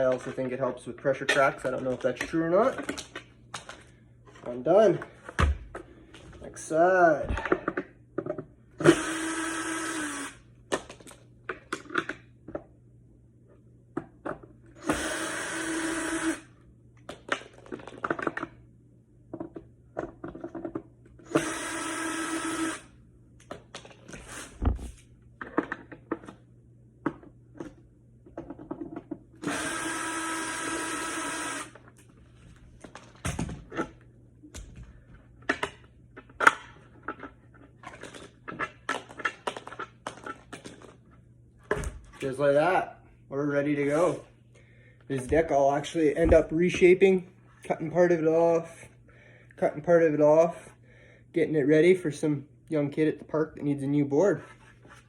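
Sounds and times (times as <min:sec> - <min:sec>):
drill running: 0:08.8 - 0:10.4, 0:14.8 - 0:16.5, 0:21.2 - 0:22.9, 0:29.4 - 0:31.8.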